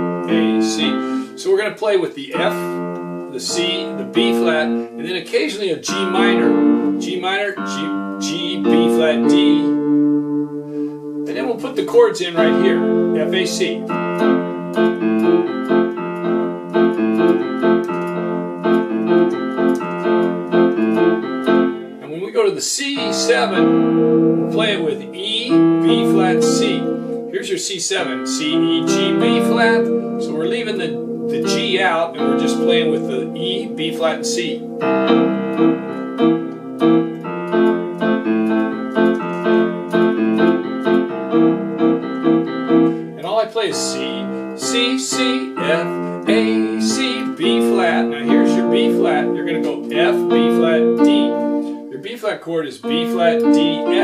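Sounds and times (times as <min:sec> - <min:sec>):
electronic keyboard chords: 0:00.0 - 0:54.0
light percussion ticking: 0:12.4 - 0:21.8, 0:28.5 - 0:43.0.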